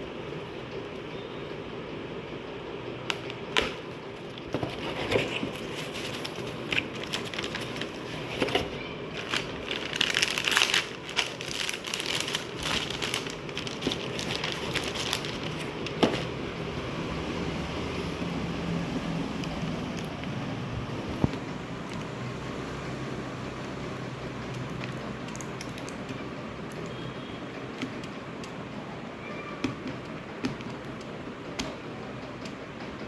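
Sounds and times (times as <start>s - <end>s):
plastic crinkling and rustling: 3.5s - 16.8s.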